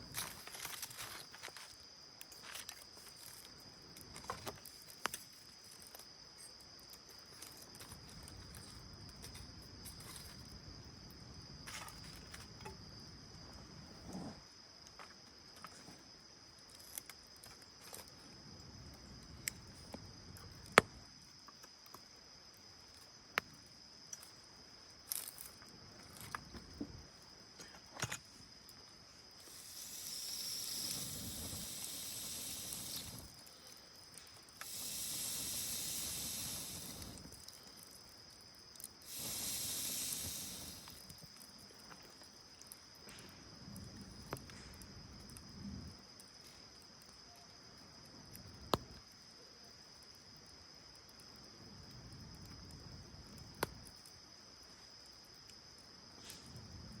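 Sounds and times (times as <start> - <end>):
campfire popping and crackling: 0.0 - 12.6, 28.6 - 47.2, 51.0 - 55.5
insect trill: 0.0 - 57.0
long hissing rushes: 29.2 - 41.4.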